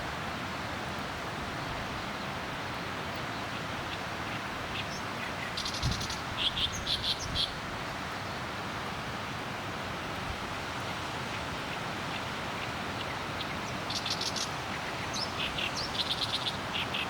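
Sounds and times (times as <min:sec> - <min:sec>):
small bird chirping and trilling: 0:13.9 - 0:14.5.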